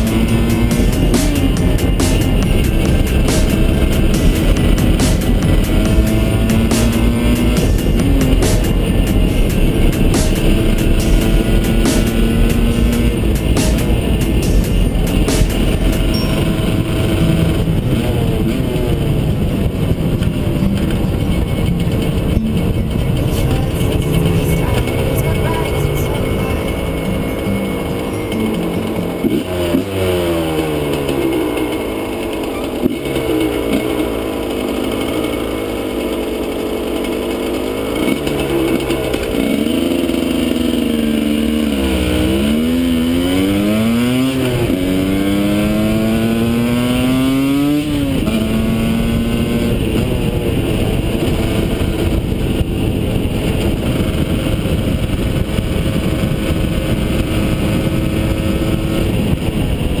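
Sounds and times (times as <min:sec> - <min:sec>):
motorcycle engine revving: 0:00.0 - 1:00.0.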